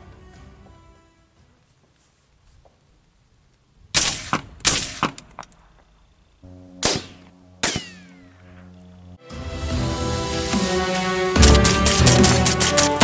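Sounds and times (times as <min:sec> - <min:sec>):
held music chord: 0:09.2 - 0:13.0.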